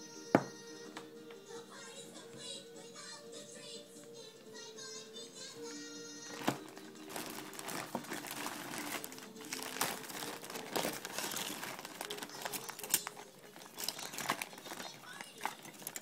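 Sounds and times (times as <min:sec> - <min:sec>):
plastic parts crinkling and clicking: 0:06.3 - 0:16.0.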